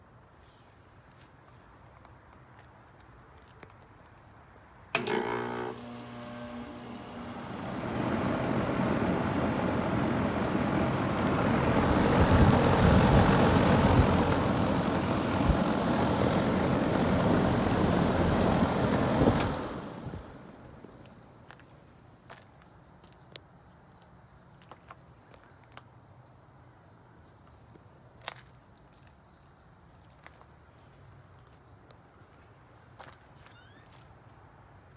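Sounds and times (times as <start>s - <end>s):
air conditioner unit humming: 5.0s - 21.4s
fan rushing noise: 5.0s - 21.4s.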